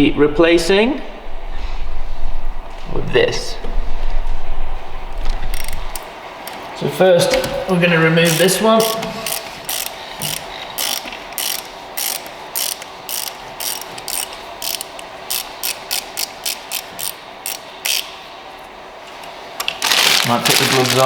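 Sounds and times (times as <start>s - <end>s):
ratchet wrench clicking: 5.5s - 6.6s, 8.2s - 18.1s.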